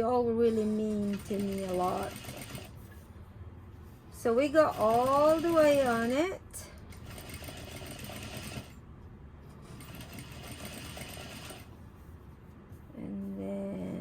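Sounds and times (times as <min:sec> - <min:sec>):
sewing machine stitching: 0:00.9 - 0:02.8, 0:04.6 - 0:06.3, 0:06.9 - 0:08.8, 0:09.7 - 0:11.7.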